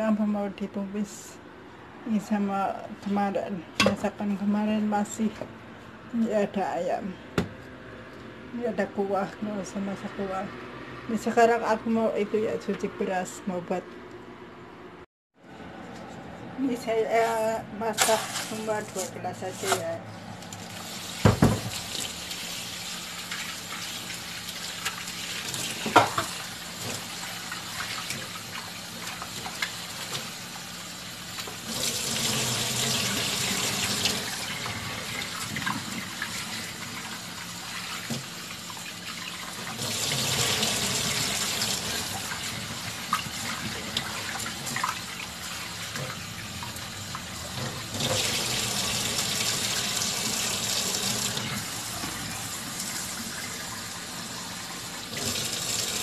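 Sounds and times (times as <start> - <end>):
tap running water into a pot: 20.8 - 22.6, 23.2 - 30.4, 37.9 - 53.8.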